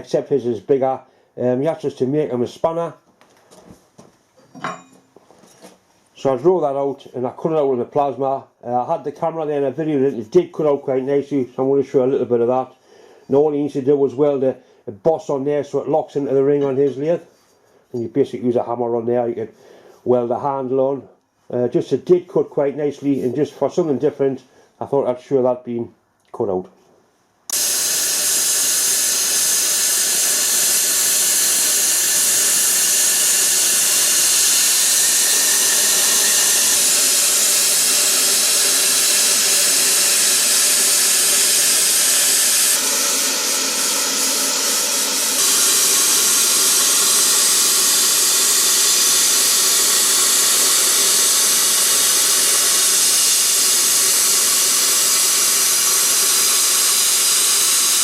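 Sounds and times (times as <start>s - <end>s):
plasma cutter hissing: 27.5s - 58.0s.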